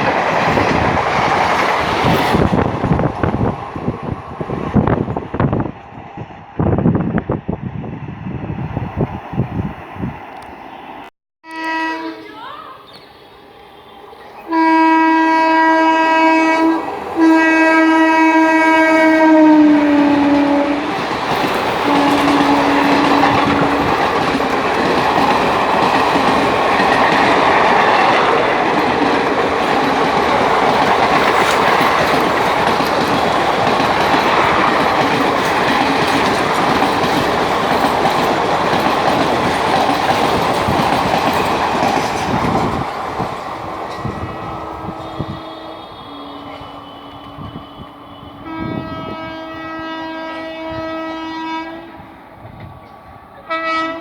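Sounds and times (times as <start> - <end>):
train rumble and wheel clatter: 0.0 - 12.2, 13.5 - 54.0
locomotive air horn blasts: 11.4 - 12.3, 14.5 - 20.9, 21.8 - 24.0, 44.1 - 52.0, 53.5 - 54.0.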